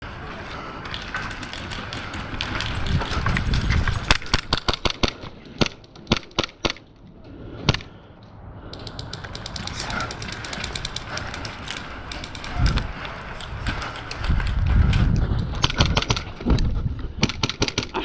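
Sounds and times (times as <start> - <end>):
low rumble of movement: 0.0 - 18.0
wind on microphone: 2.2 - 4.8, 8.8 - 17.7
airsoft gun shots: 17.2 - 18.0.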